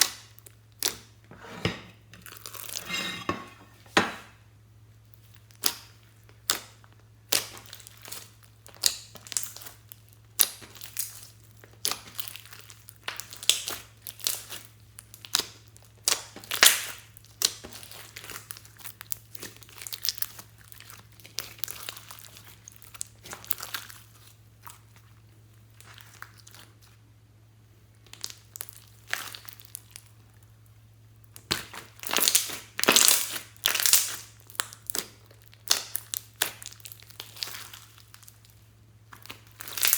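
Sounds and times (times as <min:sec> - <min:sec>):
slime squished by hand: 0:05.2 - 0:27.0, 0:28.0 - 0:30.1, 0:31.3 - 0:39.9.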